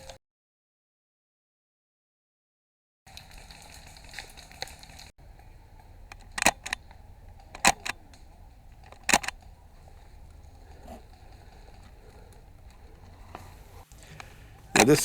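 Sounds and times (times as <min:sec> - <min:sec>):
airsoft rifle shots: 0:05.9 - 0:13.8, 0:14.7 - 0:15.0.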